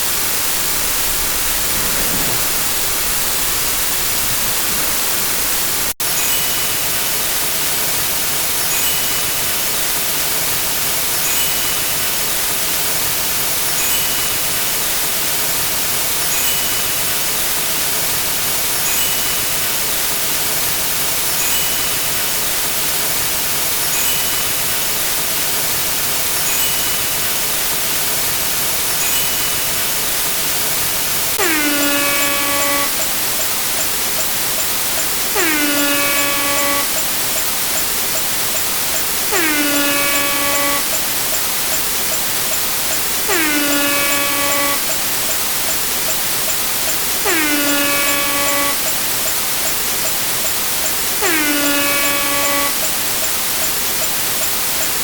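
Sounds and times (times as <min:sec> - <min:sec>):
loud steady hiss: 0:00.0 - 0:11.4, 0:17.0 - 0:55.0
air horn blast: 0:31.4 - 0:33.2, 0:35.4 - 0:37.2, 0:39.3 - 0:41.2, 0:43.3 - 0:45.0, 0:47.2 - 0:48.9, 0:51.2 - 0:52.8.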